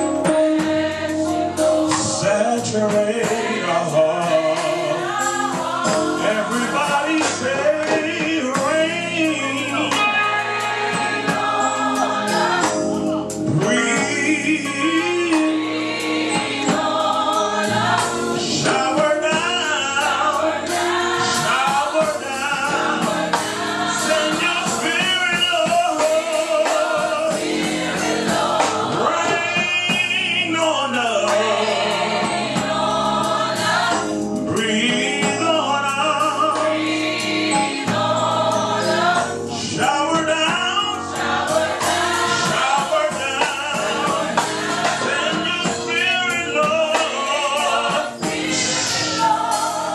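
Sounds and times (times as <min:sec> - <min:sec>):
band playing: 0:00.0 - 0:49.9
lead singer and choir singing: 0:00.0 - 0:49.9.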